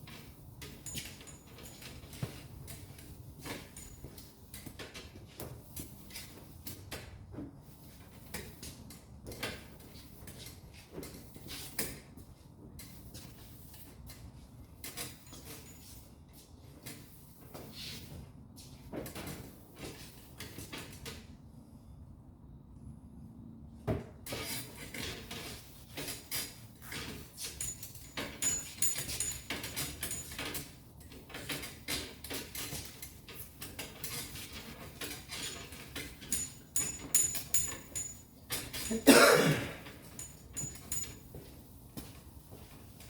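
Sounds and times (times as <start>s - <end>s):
objects being handled clattering: 26.9s - 30.7s, 31.3s - 41.4s.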